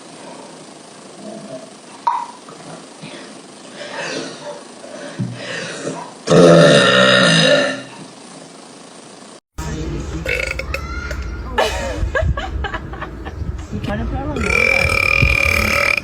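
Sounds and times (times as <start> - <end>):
woman burping: 5.7 - 7.9, 14.4 - 16.0.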